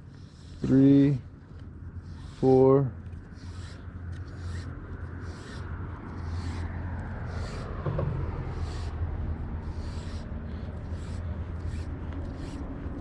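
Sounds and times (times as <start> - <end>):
steady low rumble: 0.0 - 13.0
fishing line pulled off reel: 3.4 - 6.7.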